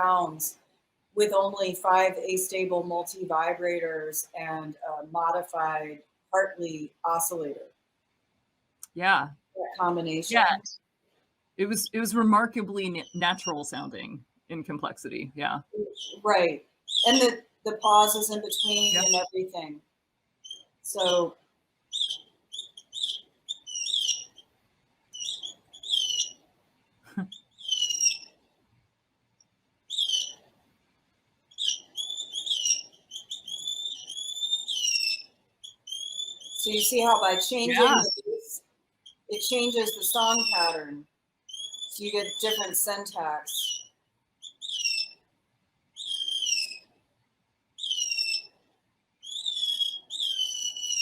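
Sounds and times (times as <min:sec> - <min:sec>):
electronic synthesized bird chirps: 0:11.7 - 0:13.9, 0:15.8 - 0:19.4, 0:21.9 - 0:24.4, 0:25.2 - 0:26.3, 0:27.2 - 0:28.3, 0:29.9 - 0:30.4, 0:31.6 - 0:38.3, 0:39.5 - 0:40.8, 0:41.5 - 0:43.8, 0:44.4 - 0:45.2, 0:46.0 - 0:46.8, 0:47.8 - 0:48.5, 0:49.2 - 0:51.0.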